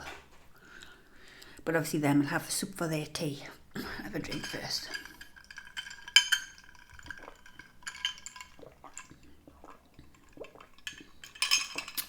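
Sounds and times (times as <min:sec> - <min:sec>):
glass and dishes clinking: 0:03.8 - 0:09.2, 0:10.0 - 0:12.0.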